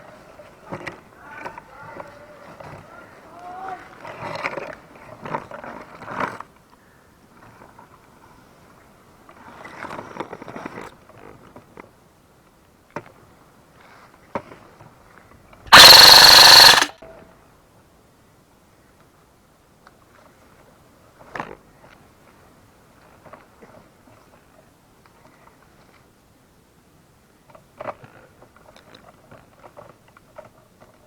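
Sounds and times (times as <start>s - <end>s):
airsoft gun full-auto burst: 15.7s - 16.9s
sharp ticks: 15.7s - 16.9s.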